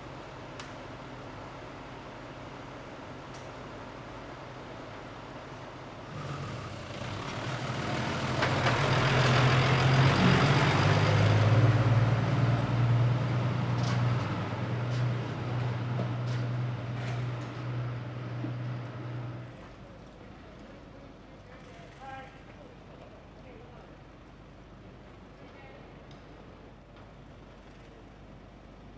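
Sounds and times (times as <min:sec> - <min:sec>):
heavy vehicle engine running: 0:03.8 - 0:20.1.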